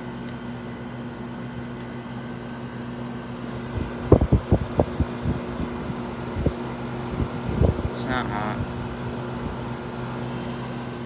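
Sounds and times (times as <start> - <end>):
air conditioner humming: 0.0 - 11.0
irregular low thumps: 3.8 - 6.6.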